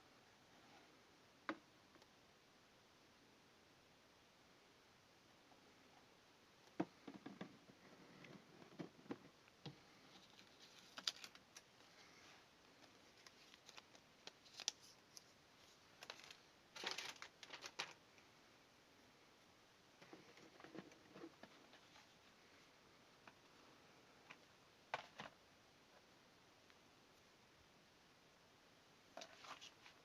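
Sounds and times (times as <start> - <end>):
packaging rustling: 10.1 - 12.0, 12.8 - 18.0.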